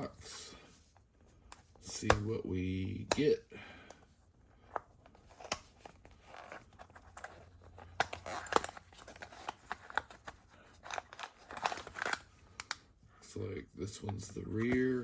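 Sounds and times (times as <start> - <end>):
packaging rustling and crinkling: 4.9 - 12.8.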